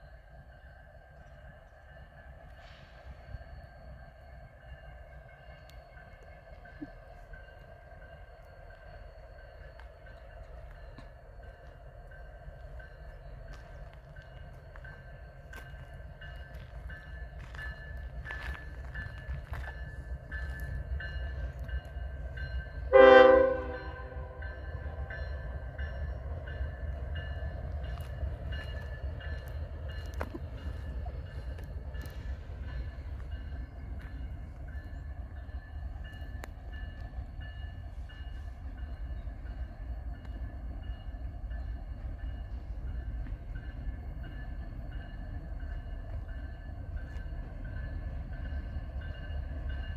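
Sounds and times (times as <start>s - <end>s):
freight train rumbling: 0.0s - 49.9s
train air horn blast: 22.9s - 24.5s.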